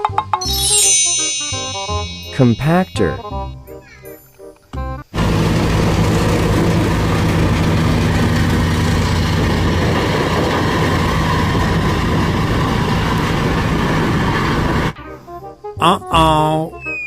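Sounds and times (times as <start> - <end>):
diesel engine running: 5.2 - 15.0.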